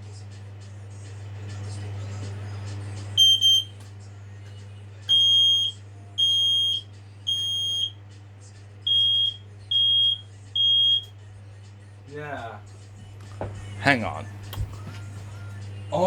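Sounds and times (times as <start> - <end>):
steady low hum: 0.0 - 16.0
smoke alarm beeping: 3.2 - 3.8, 5.1 - 8.0, 8.9 - 11.2.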